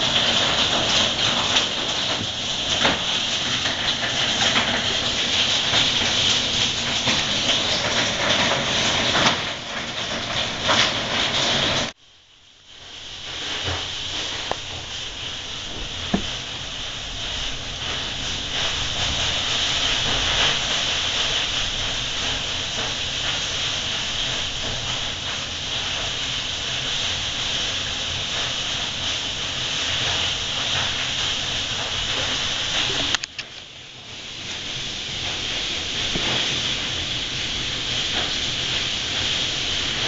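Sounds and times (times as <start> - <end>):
hail and heavy rain: 0.0 - 12.0, 12.8 - 40.0.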